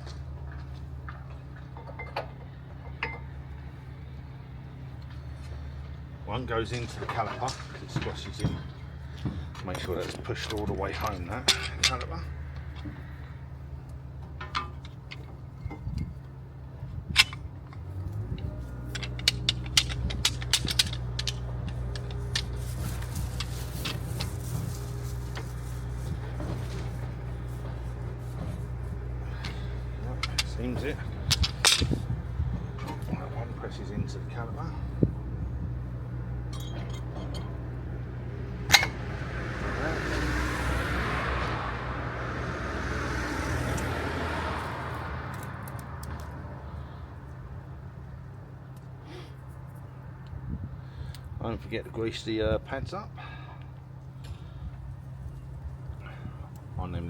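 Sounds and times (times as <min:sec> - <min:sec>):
metallic clicks of brake parts: 0:06.8 - 0:16.4, 0:17.0 - 0:37.7, 0:38.6 - 0:40.3, 0:44.9 - 0:47.3
low hum: 0:10.2 - 0:43.9
metallic clicks: 0:17.2 - 0:24.4.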